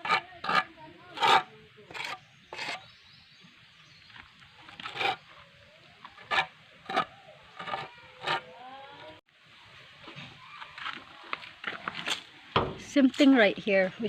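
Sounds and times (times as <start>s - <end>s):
hand file scraping metal: 0.0s - 2.8s, 4.8s - 5.2s, 6.2s - 8.5s.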